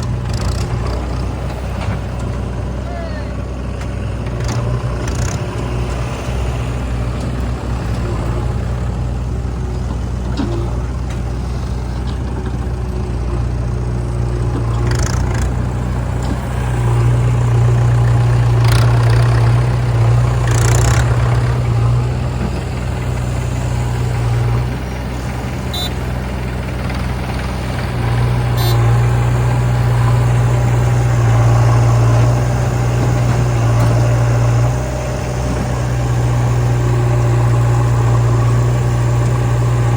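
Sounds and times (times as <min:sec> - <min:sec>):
diesel engines running: 0:00.0 - 0:39.9.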